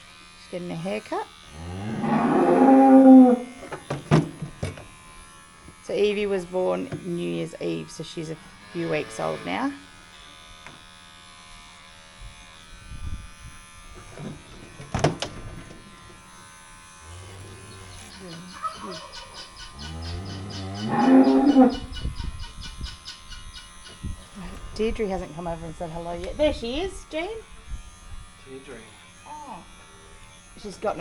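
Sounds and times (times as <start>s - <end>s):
electric clippers buzzing: 0.0s - 31.0s
cow mooing: 1.5s - 3.5s, 17.0s - 22.0s.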